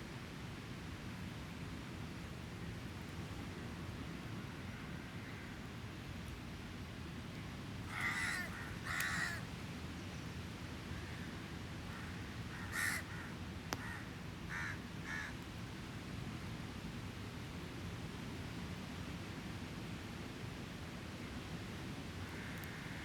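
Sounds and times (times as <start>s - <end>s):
campfire crackle: 7.9s - 9.3s
crow cawing: 7.9s - 9.5s, 11.9s - 15.3s, 22.2s - 23.0s.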